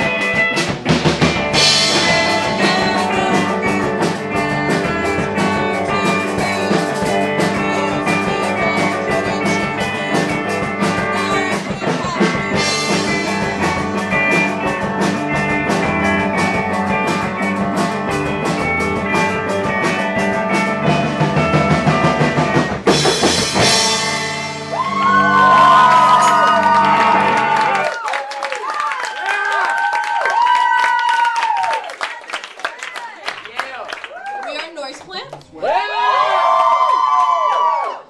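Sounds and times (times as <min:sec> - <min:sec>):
drum kit beat: 0:00.0 - 0:27.9
electric guitars: 0:00.0 - 0:28.0.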